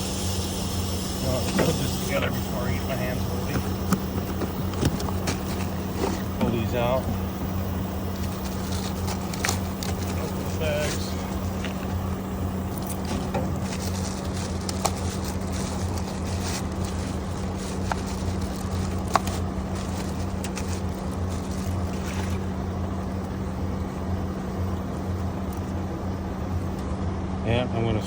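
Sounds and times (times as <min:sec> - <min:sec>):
engine idling: 0:00.0 - 0:28.0
plastic bags rustling: 0:01.3 - 0:23.4.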